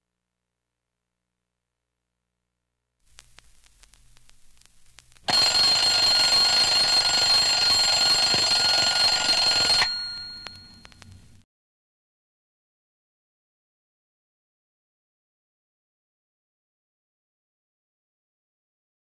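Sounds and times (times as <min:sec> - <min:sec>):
alarm clock ringing: 0:05.3 - 0:10.8.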